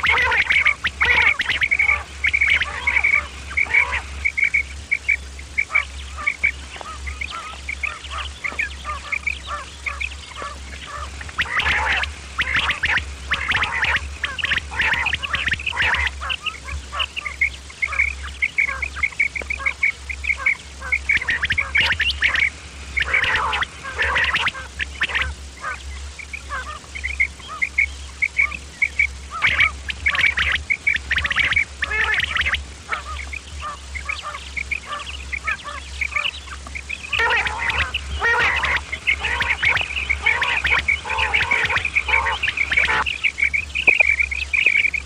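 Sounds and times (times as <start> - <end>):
quail calling: 0.0 - 45.0.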